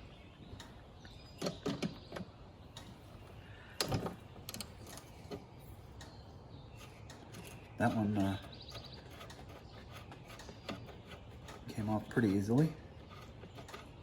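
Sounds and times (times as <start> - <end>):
metal clicks: 3.8 - 5.4.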